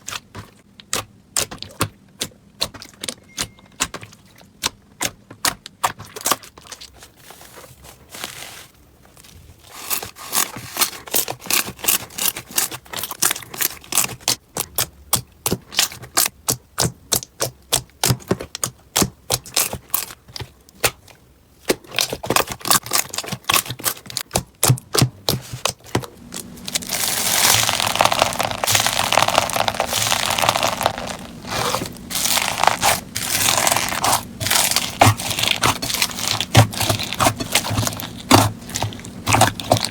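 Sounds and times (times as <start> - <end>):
slime clicking and popping: 26.8 - 39.9.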